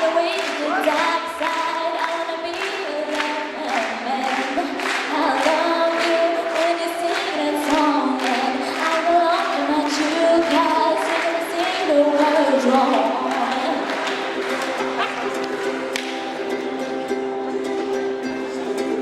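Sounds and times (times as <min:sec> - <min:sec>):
voices singing: 0:10.0 - 0:19.0.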